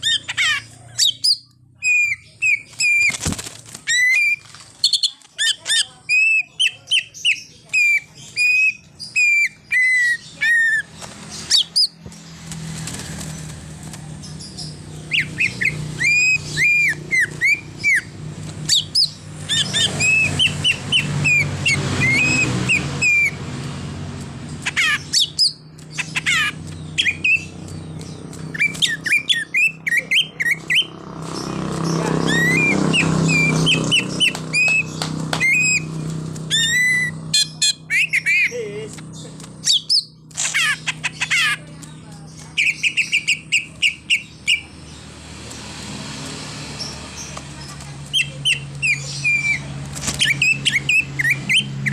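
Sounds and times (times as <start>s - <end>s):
bird singing whistles and chirps: 42.6s - 44.7s.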